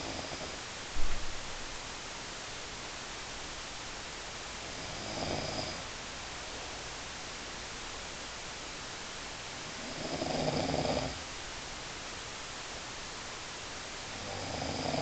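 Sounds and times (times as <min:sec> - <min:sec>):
steady hiss: 0:00.0 - 0:15.0
rough snoring: 0:04.8 - 0:05.8, 0:09.8 - 0:11.2, 0:14.2 - 0:15.0.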